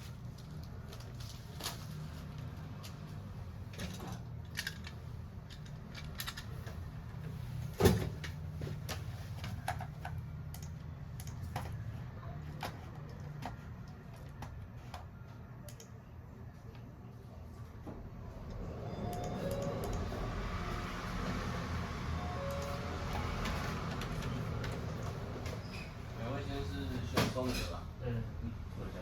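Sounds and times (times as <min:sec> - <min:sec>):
tools and phone parts clicking: 0:03.8 - 0:06.8.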